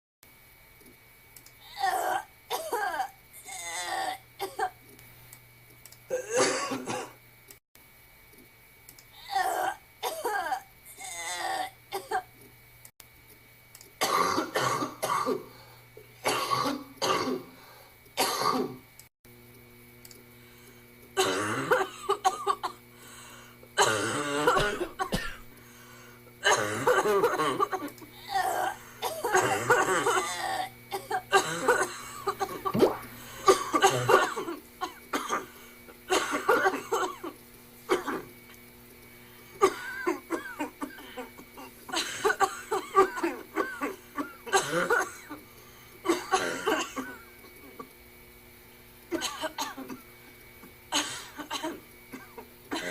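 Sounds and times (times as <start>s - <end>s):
person coughing: 1.7s - 4.8s, 6.1s - 7.2s, 9.2s - 12.3s, 14.0s - 15.5s, 16.2s - 17.5s, 18.2s - 18.8s, 21.2s - 22.8s, 23.8s - 25.4s, 26.4s - 35.5s, 36.1s - 38.3s, 39.6s - 45.4s, 46.0s - 47.9s, 49.1s - 50.0s, 51.0s - 52.9s
throat clearing: 51.0s - 52.9s.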